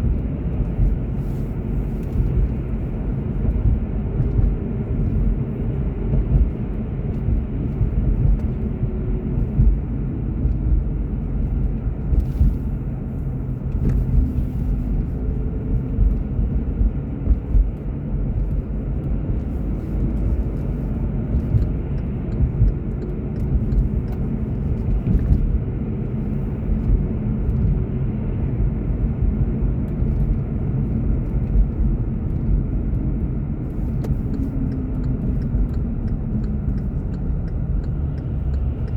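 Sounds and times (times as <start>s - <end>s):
car road and engine rumble: 0.0s - 38.9s.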